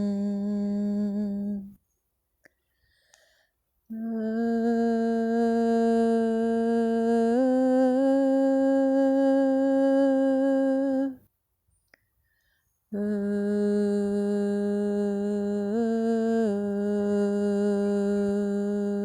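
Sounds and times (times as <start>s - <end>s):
woman singing long note: 0.0s - 1.7s, 3.9s - 11.2s, 13.0s - 19.0s.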